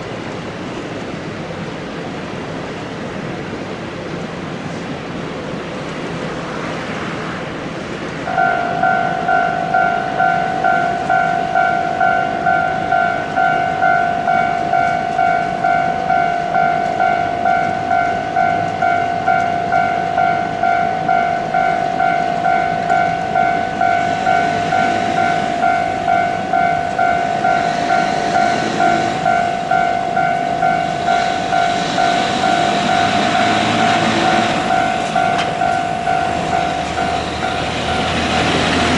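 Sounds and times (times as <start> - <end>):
rushing vehicle noise: 0.0 - 38.9
level crossing warning bell: 8.2 - 38.9.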